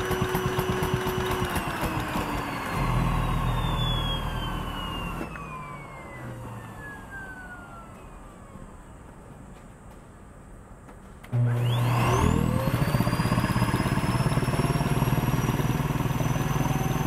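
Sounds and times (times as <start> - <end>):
vacuum cleaner motor winding down: 0.0 - 8.3, 11.3 - 17.0.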